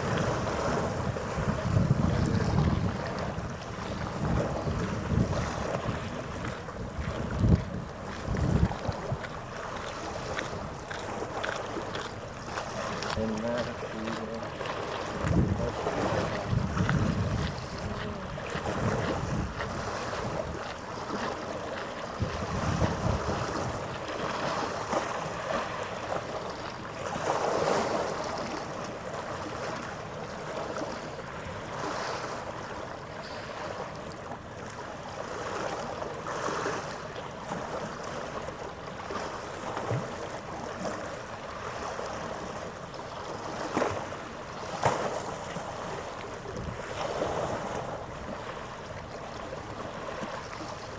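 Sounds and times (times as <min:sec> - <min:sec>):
wind gusting on microphone: 0:00.0 - 0:09.3, 0:15.1 - 0:21.2, 0:22.2 - 0:25.6
water lapping: 0:00.0 - 0:50.9.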